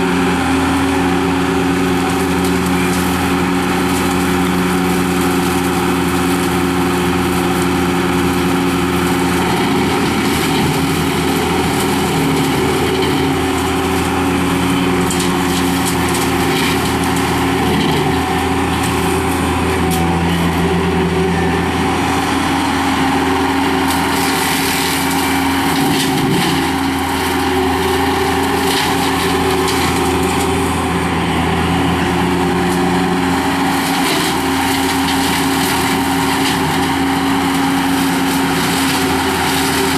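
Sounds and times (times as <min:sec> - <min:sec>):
loader engine running: 0:00.0 - 0:39.9
brush cutter ticks and crackles: 0:01.9 - 0:20.6, 0:22.7 - 0:31.0, 0:32.6 - 0:39.9.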